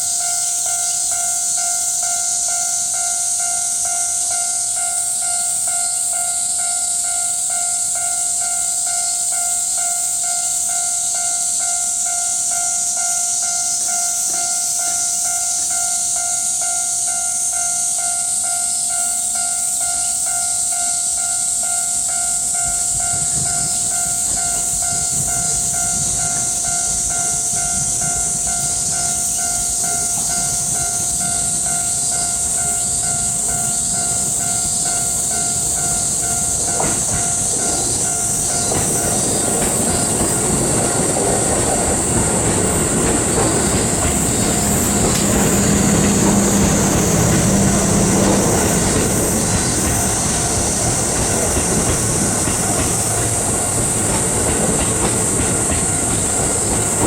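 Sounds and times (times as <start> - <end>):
level-crossing alarm dinging: 0.0 - 57.0
steady high hiss: 0.0 - 57.0
train wheels on rails: 0.0 - 57.0
train motor hum: 21.0 - 57.0.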